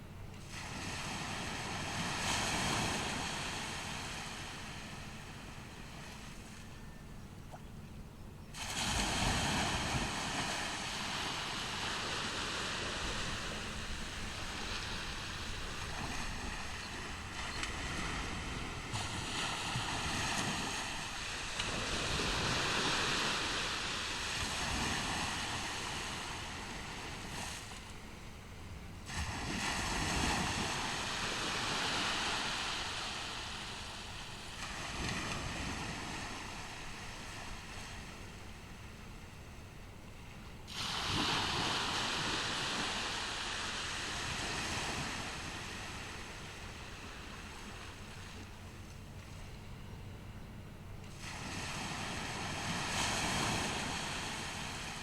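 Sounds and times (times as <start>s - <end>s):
waves breaking on beach: 0.0s - 6.9s, 8.5s - 49.8s, 51.0s - 55.0s
wind on microphone: 8.5s - 27.9s.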